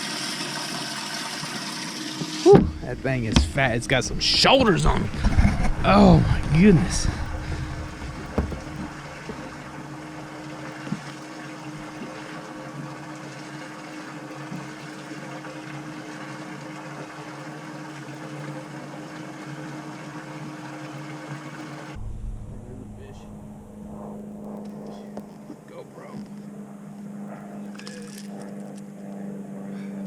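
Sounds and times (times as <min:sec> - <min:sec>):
water splashing: 0:00.0 - 0:25.4
pump humming: 0:00.0 - 0:30.0
light knocks: 0:08.0 - 0:09.5.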